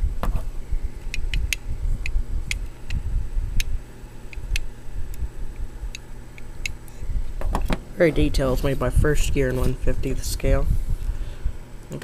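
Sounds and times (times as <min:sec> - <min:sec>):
low handling rumble: 0:07.0 - 0:12.0.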